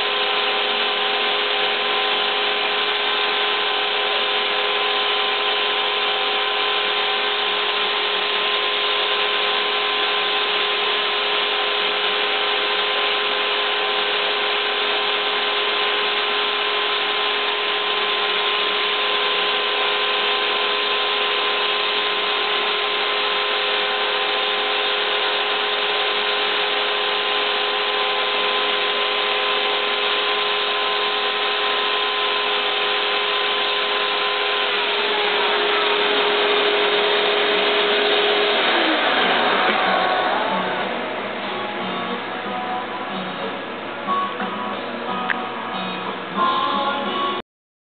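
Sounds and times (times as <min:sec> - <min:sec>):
router spindle motor whine: 0:00.0 - 0:46.4
constant mechanical noise: 0:00.0 - 0:47.4.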